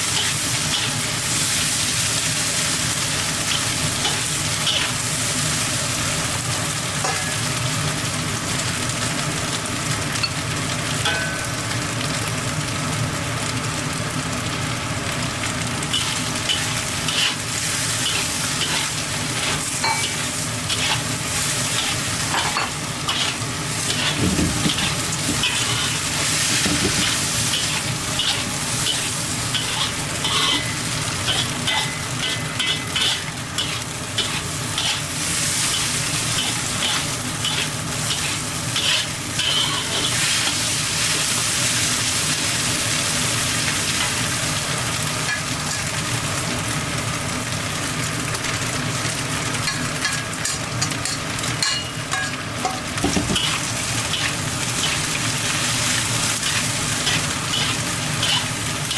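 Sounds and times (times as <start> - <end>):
food sizzling in a pan: 0.0 - 58.9
spatula scraping a pan: 15.9 - 41.3, 51.6 - 58.9.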